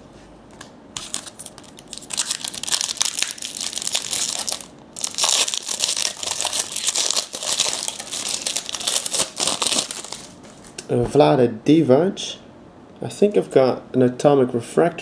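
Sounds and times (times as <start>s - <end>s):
wrapper tearing and crinkling: 1.0s - 10.8s.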